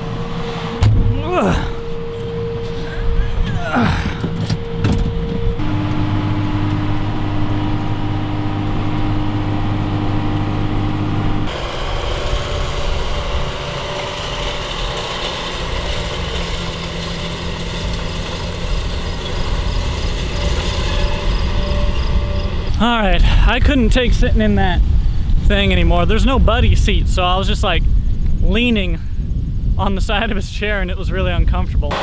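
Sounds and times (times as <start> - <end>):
tractor engine running: 0.0 - 25.6.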